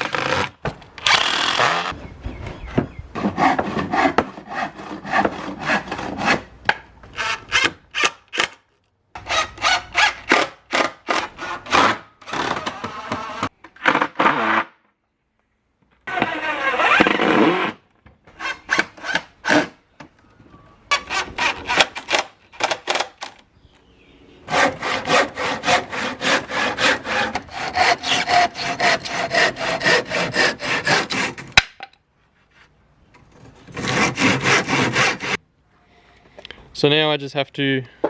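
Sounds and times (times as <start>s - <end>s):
handsaw cutting timber: 3.2s - 6.5s, 20.9s - 21.9s, 24.5s - 31.6s, 33.4s - 35.4s.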